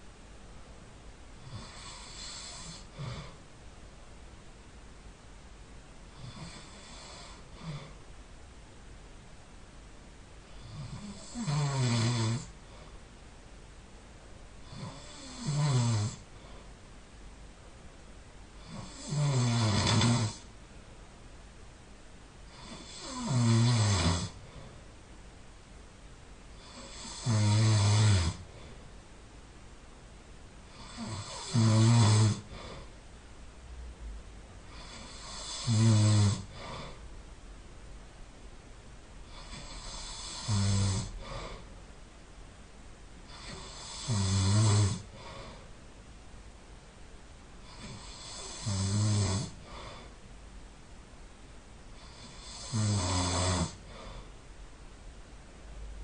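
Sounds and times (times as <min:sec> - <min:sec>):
person snoring: 0:01.4 - 0:03.4, 0:06.1 - 0:08.0, 0:10.5 - 0:12.9, 0:14.6 - 0:16.6, 0:18.6 - 0:20.5, 0:22.5 - 0:24.8, 0:26.6 - 0:28.8, 0:30.6 - 0:32.9, 0:34.7 - 0:37.0, 0:39.2 - 0:41.7, 0:43.3 - 0:45.6, 0:47.6 - 0:50.1, 0:52.0 - 0:54.3.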